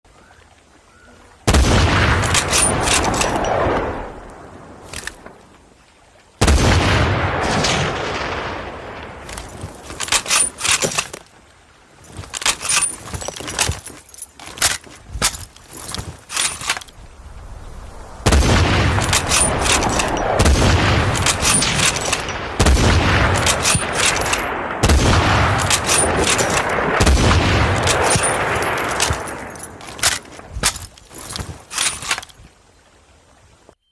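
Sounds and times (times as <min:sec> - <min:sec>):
rifle shots with long echo: 0:06.4 - 0:09.1, 0:17.4 - 0:29.5.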